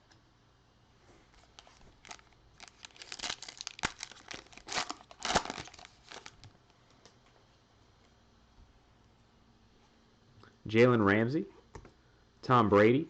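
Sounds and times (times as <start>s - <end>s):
plastic wrapper tearing and crinkling: 1.4s - 6.5s.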